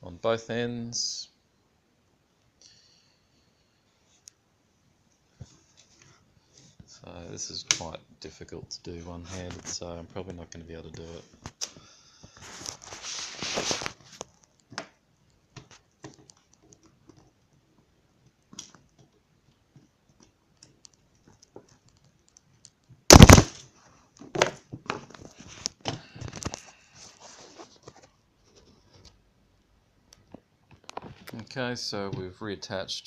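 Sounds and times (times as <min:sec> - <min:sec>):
rustling: 0:09.0 - 0:14.8, 0:19.7 - 0:29.2
small clicks and handling noises: 0:13.7 - 0:23.0, 0:24.1 - 0:31.6.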